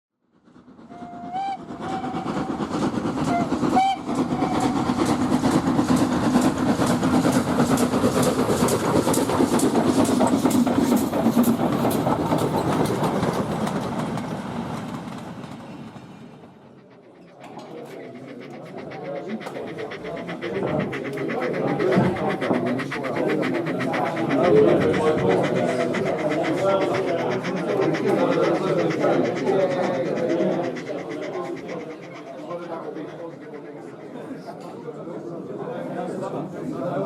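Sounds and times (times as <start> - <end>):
train wheels clickety-clack: 0.3 - 35.0
steam train whistle blasts: 0.9 - 2.3, 3.3 - 4.8.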